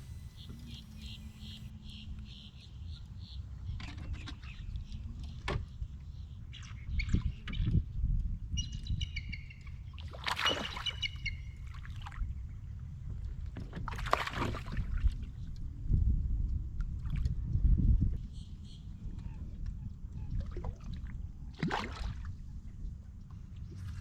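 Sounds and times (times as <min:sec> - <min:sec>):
steady low rumble: 0:00.0 - 0:02.3
bird calling with high note: 0:00.0 - 0:02.7.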